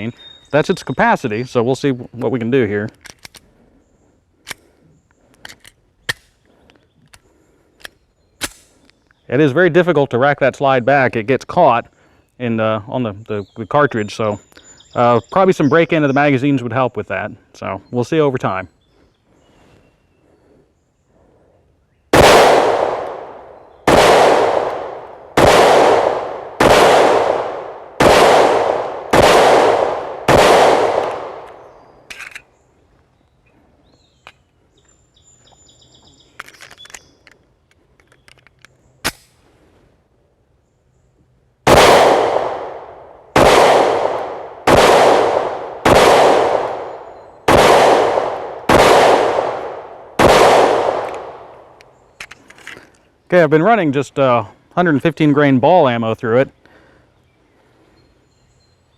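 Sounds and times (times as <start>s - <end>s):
metallic clicks and handling: 2.8s - 3.5s, 5.3s - 7.2s, 31.4s - 32.6s, 36.2s - 39.4s, 51.8s - 53.0s
pistol shots echoing: 22.2s - 31.8s, 41.7s - 51.8s.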